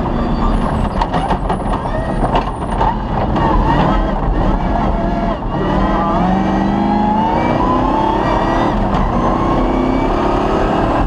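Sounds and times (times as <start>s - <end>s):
knocks and rattles over rough ground: 0.0s - 5.0s
rally car engine running hard: 0.0s - 11.0s.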